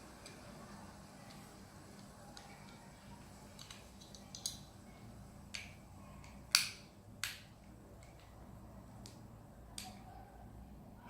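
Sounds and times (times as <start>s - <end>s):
plastic toy parts snapping: 3.6s - 4.6s, 5.5s - 7.5s.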